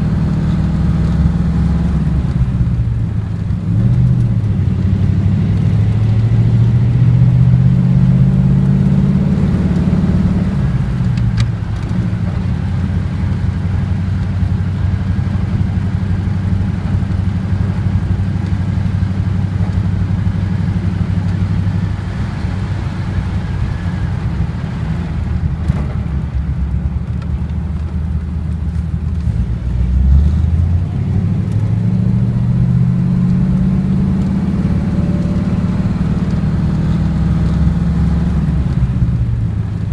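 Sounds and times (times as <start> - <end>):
car engine driving: 0.0 - 39.9.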